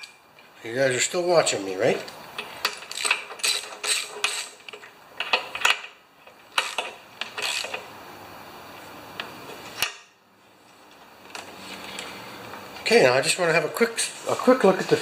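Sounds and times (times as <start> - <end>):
wrench clicking and rasping: 2.4 - 5.9, 6.5 - 7.9.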